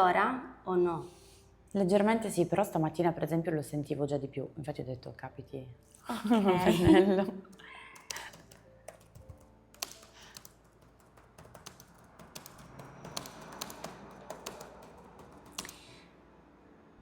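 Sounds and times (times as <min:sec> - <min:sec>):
keyboard key clicks: 0:08.0 - 0:15.8.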